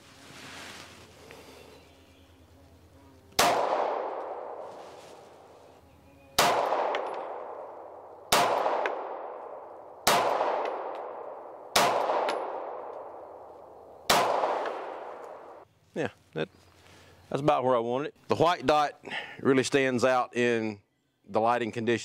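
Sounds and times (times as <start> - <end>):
pistol shots with long echo: 3.4 - 4.6, 6.4 - 15.6.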